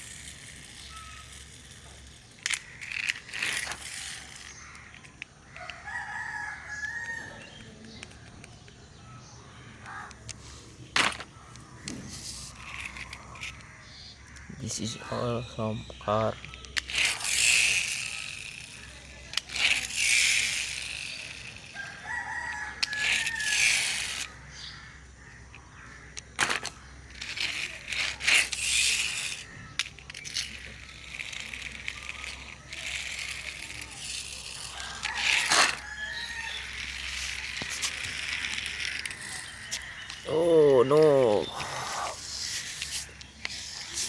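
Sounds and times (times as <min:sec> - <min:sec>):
rooster crowing: 0:05.8 - 0:07.4, 0:21.7 - 0:23.9.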